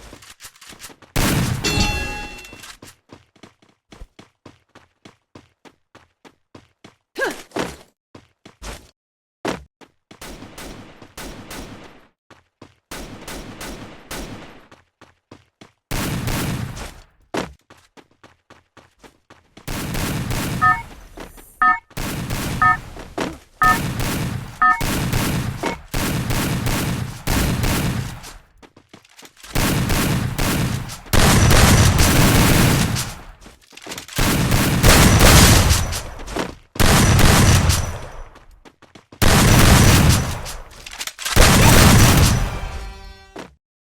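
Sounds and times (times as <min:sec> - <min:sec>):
video game automatic gunfire: 0:19.7 - 0:20.8, 0:21.6 - 0:23.0, 0:23.6 - 0:28.4, 0:29.4 - 0:33.3, 0:34.0 - 0:36.0, 0:36.8 - 0:38.1, 0:39.2 - 0:42.5.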